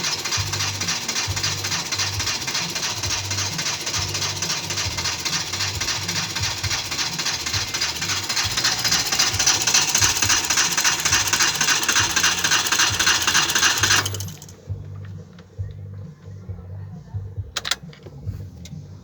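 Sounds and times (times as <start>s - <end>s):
car engine cranking on starter: 0.0s - 15.2s.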